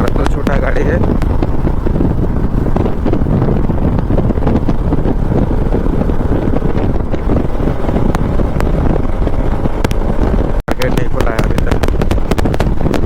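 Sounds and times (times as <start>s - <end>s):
motorcycle engine running: 0.0s - 13.0s
wind buffeting microphone: 0.0s - 13.0s.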